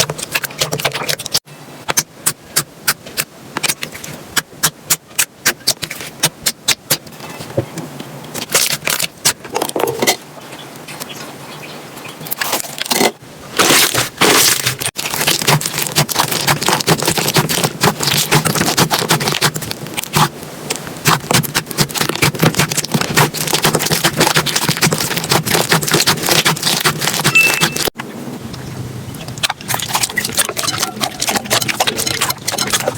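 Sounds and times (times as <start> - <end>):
slime crackling and clicking: 14.3 - 27.9.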